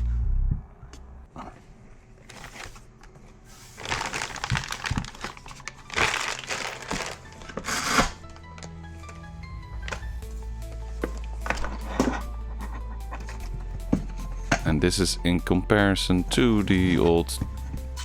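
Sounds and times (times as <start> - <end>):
crinkling and rustling: 2.1 - 14.7, 16.6 - 18.0
background music: 4.7 - 18.0.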